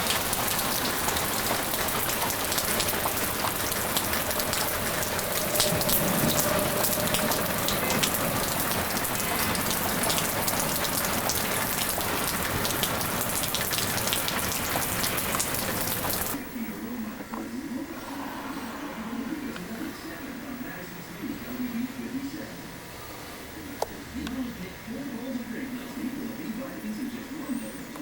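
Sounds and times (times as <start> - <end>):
heavy rain: 0.0 - 16.4
raindrops striking a surface: 0.0 - 16.4
faint steady tone: 2.3 - 13.6.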